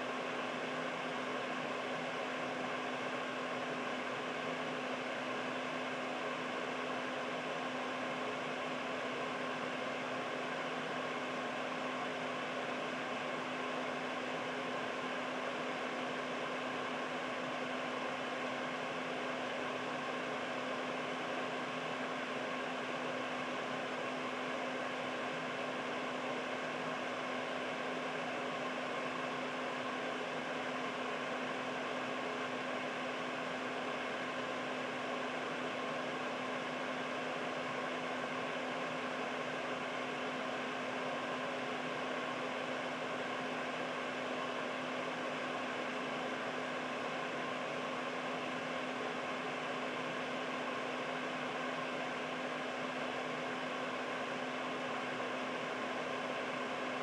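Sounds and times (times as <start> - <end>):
air purifier fan running: 0.0 - 57.0.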